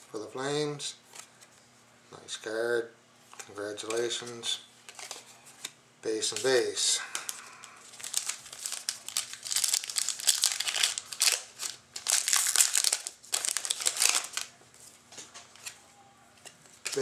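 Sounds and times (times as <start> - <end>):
plastic wrapper crinkling: 7.2 - 14.6.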